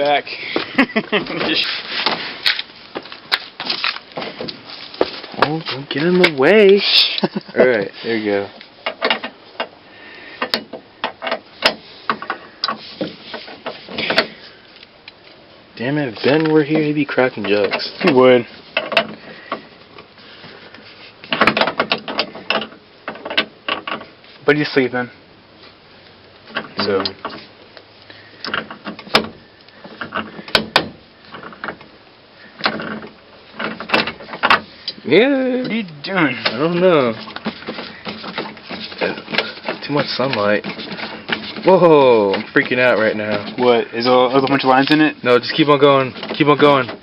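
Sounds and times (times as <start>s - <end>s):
sharp clicks and light knocks: 8.6s - 20.1s, 20.7s - 24.4s, 26.0s - 35.0s, 35.6s - 47.0s
door panel clicks and rattles: 32.6s - 34.6s.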